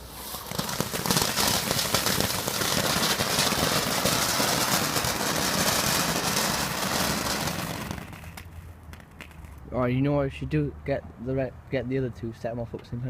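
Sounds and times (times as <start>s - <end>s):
firework fountain hissing and crackling: 0.0s - 8.5s.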